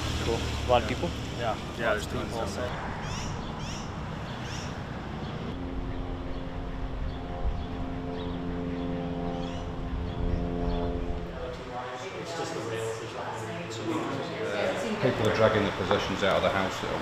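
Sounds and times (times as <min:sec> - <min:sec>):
steady pitched hum: 0:03.0 - 0:15.0
motor running: 0:03.9 - 0:11.5.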